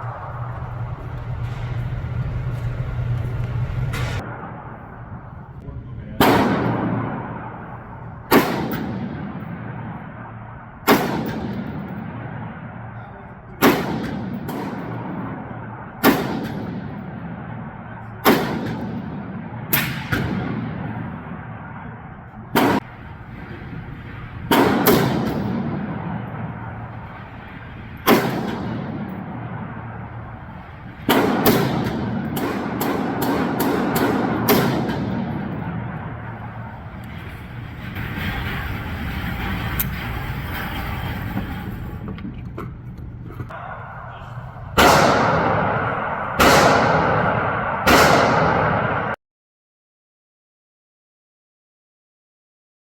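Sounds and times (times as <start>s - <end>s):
rifle shots echoing: 6.2s - 23.3s, 24.4s - 37.7s, 43.5s - 49.2s.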